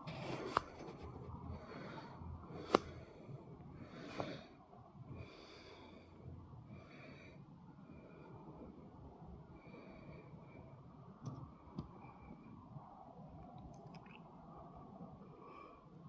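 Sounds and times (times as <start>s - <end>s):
person breathing heavily: 0.1s - 11.0s.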